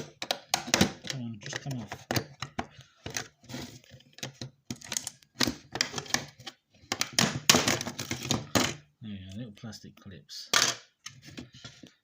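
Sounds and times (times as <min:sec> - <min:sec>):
plastic casing clicking and cracking: 0:00.0 - 0:03.3, 0:04.2 - 0:08.7.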